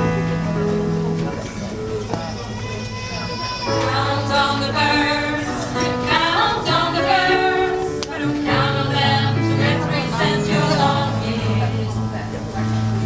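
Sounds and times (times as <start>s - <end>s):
choir singing in parts: 3.8s - 12.1s.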